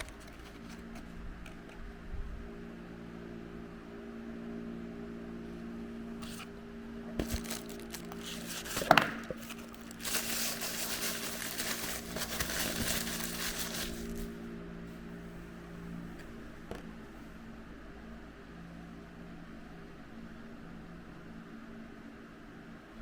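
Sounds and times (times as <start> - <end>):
plastic packaging crinkling: 0.0 - 1.6, 6.2 - 6.5, 7.2 - 14.3.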